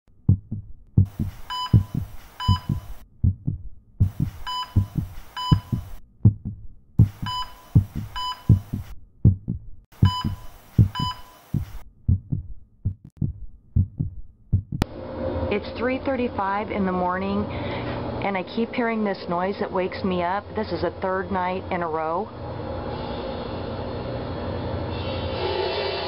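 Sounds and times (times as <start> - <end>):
fast low heartbeat thumps: 0.2 - 14.9
static bursts: 1.0 - 3.0, 4.0 - 6.0, 7.0 - 8.9, 10.0 - 11.8
short electronic beeps: 1.5 - 3.0, 4.4 - 6.0, 7.2 - 8.7, 10.0 - 11.7.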